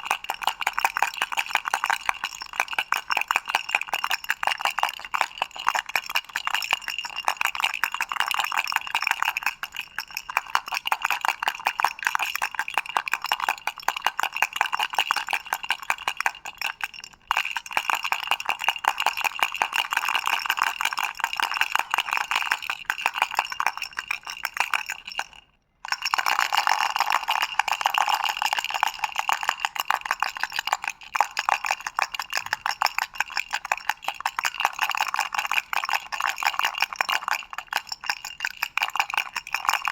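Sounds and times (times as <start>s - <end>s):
toy rattle clattering: 15.5s - 39.9s.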